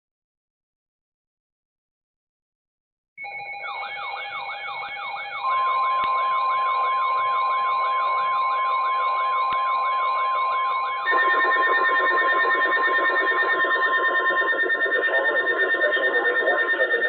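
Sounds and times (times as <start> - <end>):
loud steady high alert tone: 3.2 - 17.0
steady alert tones: 3.6 - 17.0
warbling siren sweep: 3.6 - 17.0.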